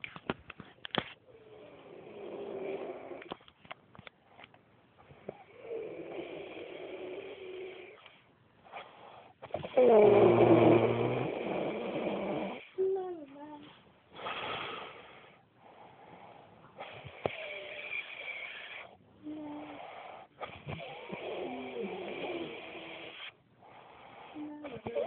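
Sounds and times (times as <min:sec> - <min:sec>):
man snoring loudly: 0:09.6 - 0:12.7, 0:20.8 - 0:23.2.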